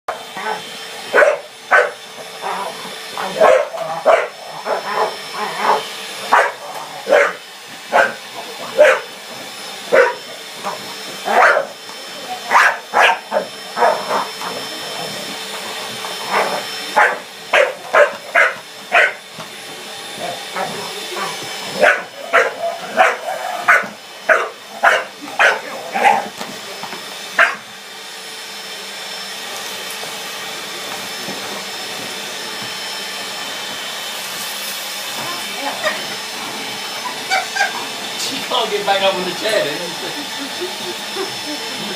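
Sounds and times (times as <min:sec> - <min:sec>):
vacuum cleaner motor whine: 0:00.1 - 0:41.9
dog barking: 0:00.5 - 0:02.0, 0:03.2 - 0:09.1, 0:09.9 - 0:10.2, 0:11.3 - 0:11.8, 0:12.5 - 0:14.3, 0:16.3 - 0:19.2, 0:21.8 - 0:26.3, 0:27.4 - 0:27.6.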